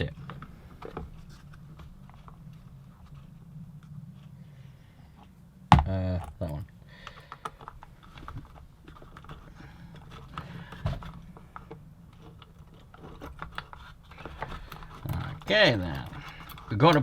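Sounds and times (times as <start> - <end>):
small parts clicking and tapping: 5.2 - 17.0.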